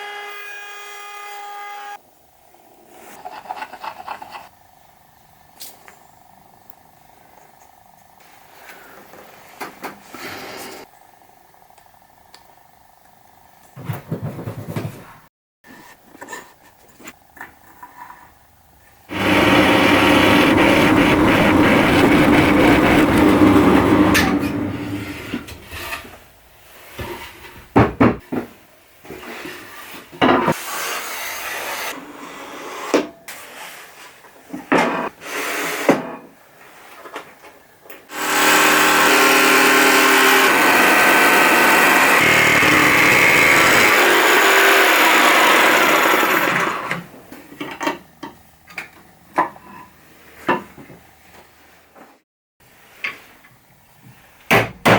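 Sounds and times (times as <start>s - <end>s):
handheld power tool running: 19.1s - 25.5s, 38.1s - 47.0s.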